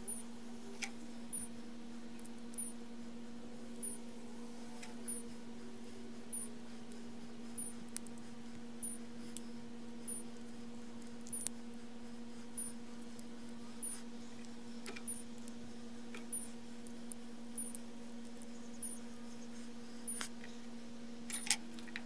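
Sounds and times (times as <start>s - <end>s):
faint high chirp: 0.0s - 1.5s, 12.6s - 12.8s, 14.8s - 15.5s, 17.5s - 17.8s, 18.5s - 20.3s
steady low hum: 0.0s - 22.0s.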